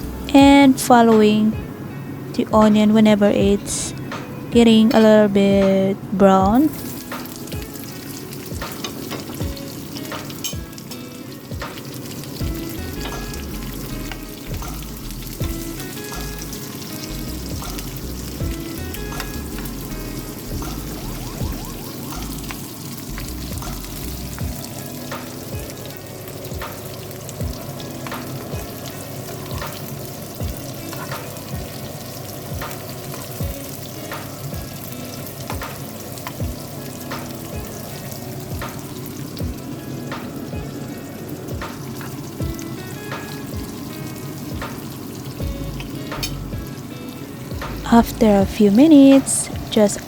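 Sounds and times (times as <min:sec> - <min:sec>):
food sizzling in hot oil: 0:06.5 - 0:50.0.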